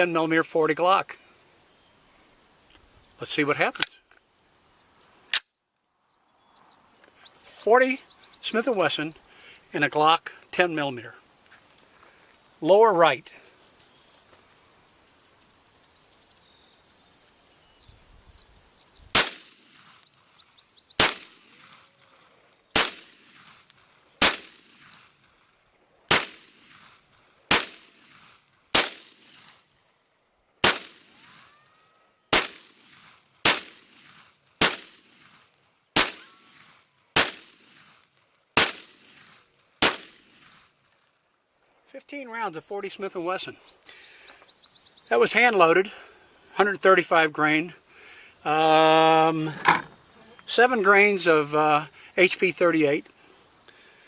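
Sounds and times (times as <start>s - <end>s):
gun handling clicks: 5.0s - 5.6s
pistol shots with echo: 19.1s - 19.8s, 21.0s - 21.7s, 22.7s - 23.5s, 24.2s - 24.9s, 26.1s - 26.8s, 27.5s - 29.5s, 30.6s - 31.4s, 32.3s - 35.3s, 36.0s - 37.9s, 38.6s - 40.6s.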